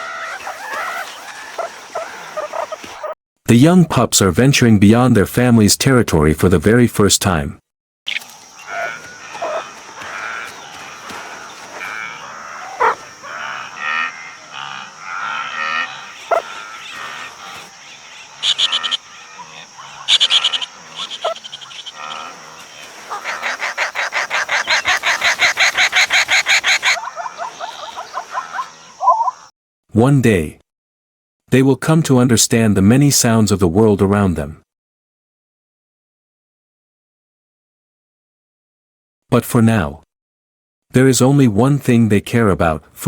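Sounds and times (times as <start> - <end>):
animal chirps and calls: 0.0 - 3.1, 8.1 - 29.5
fast pulsed croaking call: 0.0 - 3.1, 8.1 - 29.5
high insect drone: 8.1 - 29.2.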